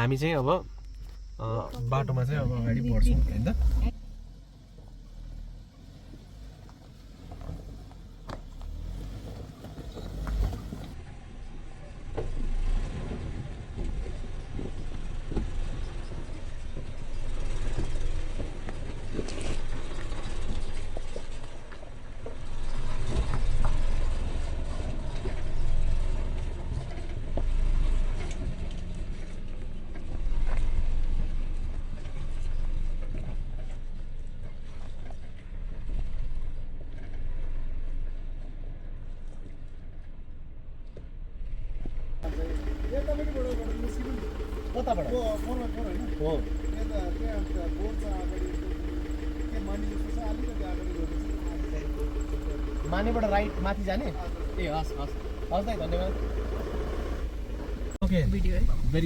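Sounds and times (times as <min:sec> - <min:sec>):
vehicle engine and tyres rumbling: 0:00.0 - 0:39.1, 0:42.2 - 0:59.0
knocks and rattles over bumps: 0:06.5 - 0:11.0, 0:42.2 - 0:58.0.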